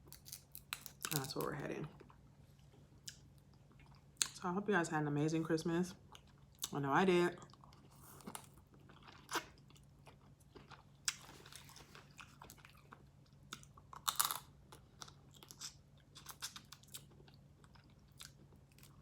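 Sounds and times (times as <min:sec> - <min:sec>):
chewing and crunching shellfish: 0:00.0 - 0:04.4, 0:06.0 - 0:19.0.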